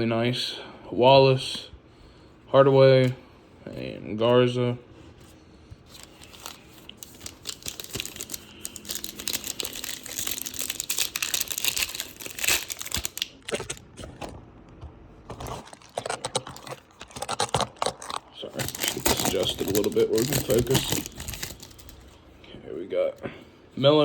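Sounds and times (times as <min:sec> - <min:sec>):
plastic wrapper crinkling and tearing: 0:05.9 - 0:14.1, 0:15.3 - 0:22.1.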